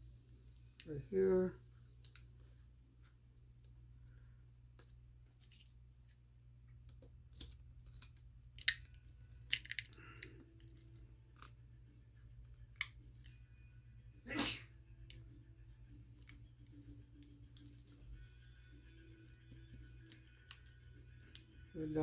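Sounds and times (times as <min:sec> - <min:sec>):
faint low hum: 0:00.0 - 0:22.0
plastic film crinkling and clicks: 0:01.8 - 0:03.7.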